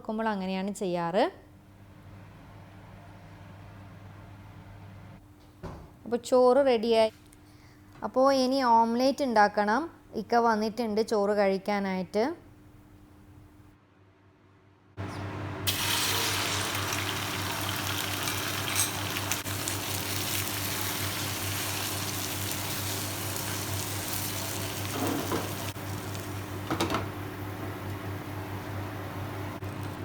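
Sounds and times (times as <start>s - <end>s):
omelette sizzling in a pan: 15.7s - 26.5s.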